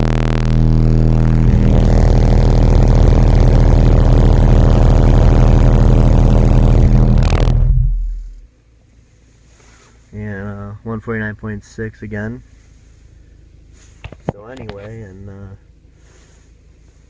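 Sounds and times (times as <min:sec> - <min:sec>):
subwoofer low test tone drone: 0:00.0 - 0:09.4.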